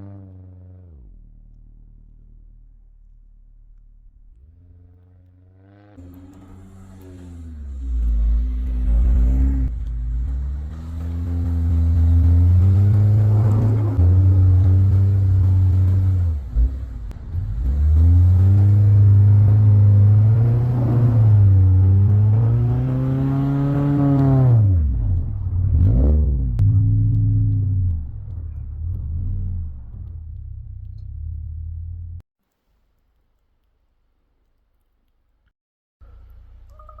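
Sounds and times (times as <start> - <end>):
car engine revving: 4.2 - 32.2.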